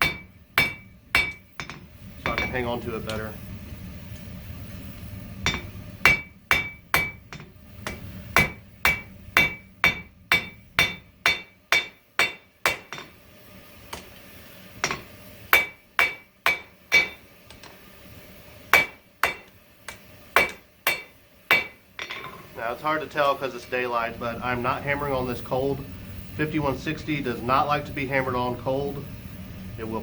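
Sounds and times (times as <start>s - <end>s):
hammer striking steel on anvil: 0.0s - 3.2s, 5.4s - 13.2s, 14.8s - 17.3s, 18.7s - 22.5s.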